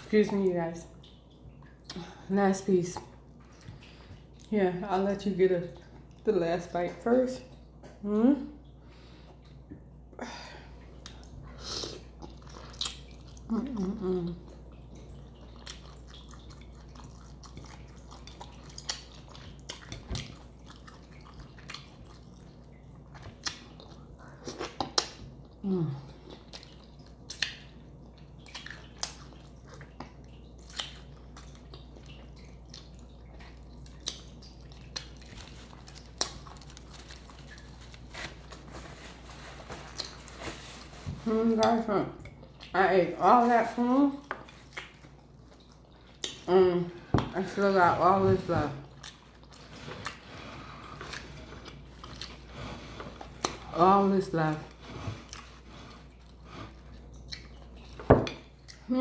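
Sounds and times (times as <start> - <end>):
close chewing and biting: 11.0 - 41.0, 48.8 - 53.7, 54.7 - 58.9.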